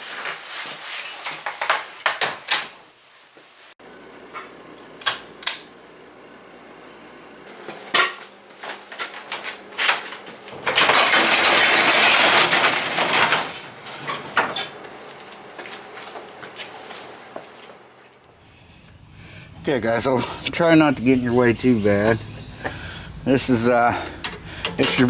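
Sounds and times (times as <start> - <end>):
tools rattling in toolbox: 10.6 - 13.6
metal hand tools clinking: 24.2 - 25.0.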